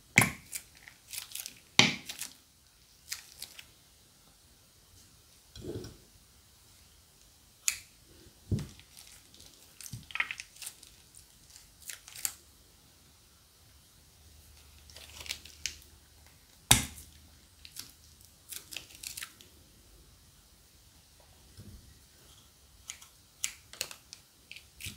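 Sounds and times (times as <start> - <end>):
plastic bags crinkling: 0.5 - 2.4, 3.1 - 3.7, 14.8 - 15.8, 18.5 - 19.4.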